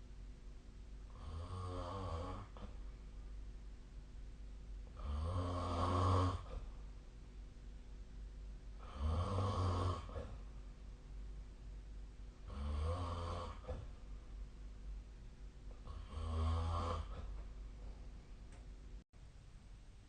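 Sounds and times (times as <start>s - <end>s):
person snoring: 1.1s - 2.8s, 5.0s - 6.7s, 8.8s - 10.4s, 12.4s - 14.0s, 15.8s - 17.4s.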